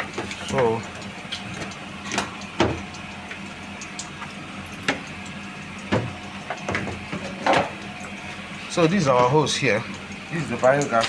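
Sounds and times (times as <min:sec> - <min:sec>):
steady machine hum: 0:00.0 - 0:11.0.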